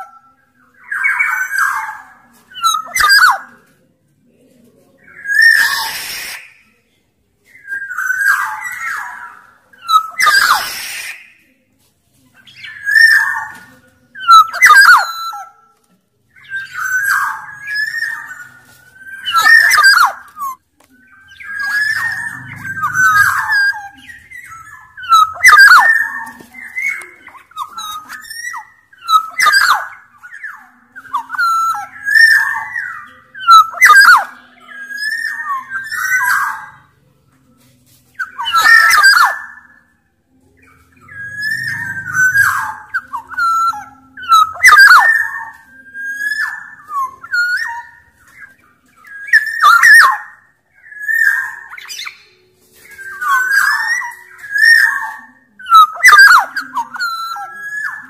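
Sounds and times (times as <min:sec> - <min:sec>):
oriole fluty whistled calls: 0:00.0 - 0:03.8, 0:04.9 - 0:11.6, 0:12.4 - 0:15.7, 0:16.3 - 0:37.0, 0:38.0 - 0:58.0.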